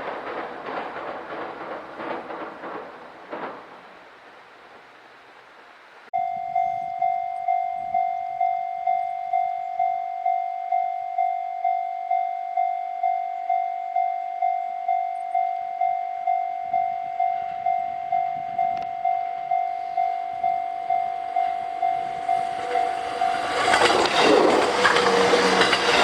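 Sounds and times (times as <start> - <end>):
train wheels rushing on rail: 0.0 - 4.9, 19.5 - 26.0
level-crossing bell ringing: 6.2 - 26.0.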